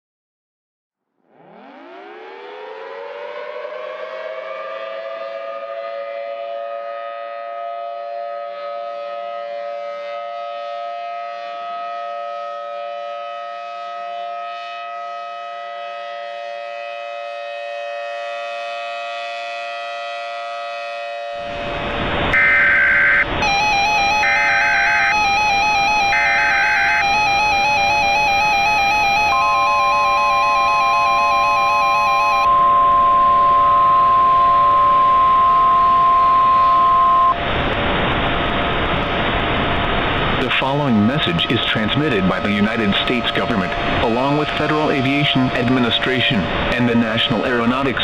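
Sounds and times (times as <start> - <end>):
civil defence siren wailing: 1.2 - 48.0
loud static: 21.5 - 32.5
short bursts of data tones: 22.4 - 37.4.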